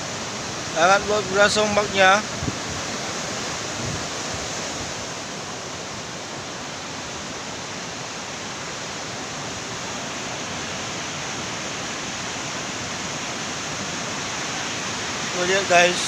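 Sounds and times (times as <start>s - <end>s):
heavy surf: 0.0s - 16.0s
wind: 0.0s - 16.0s.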